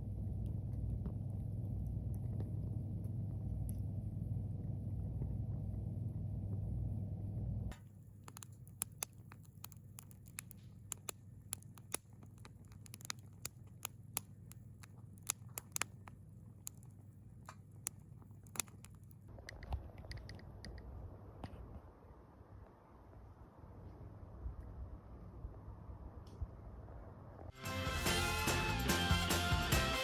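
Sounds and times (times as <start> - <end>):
sharp crackles and clicks: 0.0 - 21.7
low steady hum: 0.0 - 28.8.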